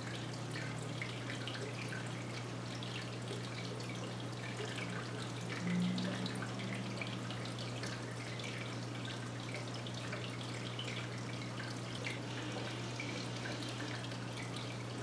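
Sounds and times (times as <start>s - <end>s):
water dripping and trickling: 0.0s - 15.0s
steady low hum: 4.6s - 15.0s.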